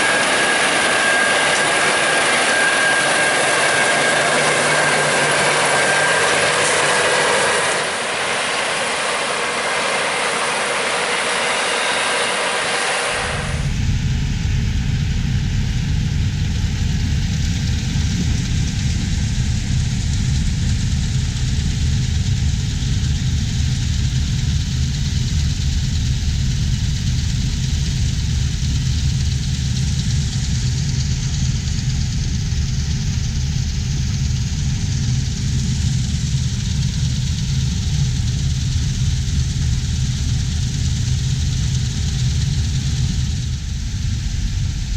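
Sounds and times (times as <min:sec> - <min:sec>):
whining tones: 0:00.0 - 0:13.8.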